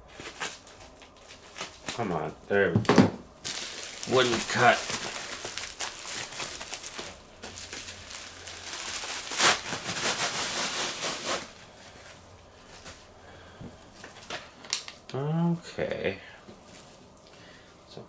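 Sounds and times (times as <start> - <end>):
package rustling and crinkling: 0.0 - 13.1, 13.8 - 15.2.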